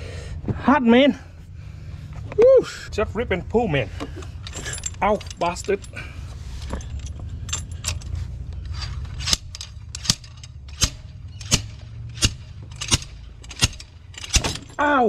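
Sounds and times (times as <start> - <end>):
low hum: 0.0 - 15.0
hand tools clinking on metal: 4.1 - 15.0
sharp metallic taps: 7.9 - 14.6.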